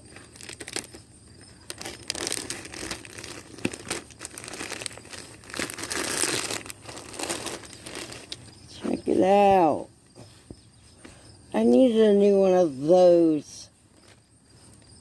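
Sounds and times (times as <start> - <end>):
packaging crinkling and tearing: 0.0 - 8.5.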